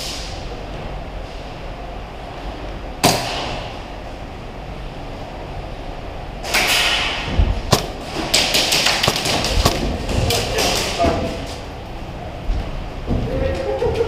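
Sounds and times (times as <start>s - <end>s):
sharp crack: 3.0s - 3.8s, 6.5s - 11.1s
sharp knocks: 6.6s - 11.3s.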